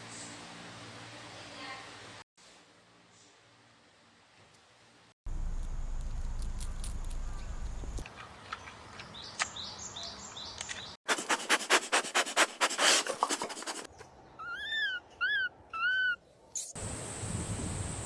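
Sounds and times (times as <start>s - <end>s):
rapid scratchy rasping: 11.1s - 13.9s
high squeaky animal calls: 14.4s - 16.2s.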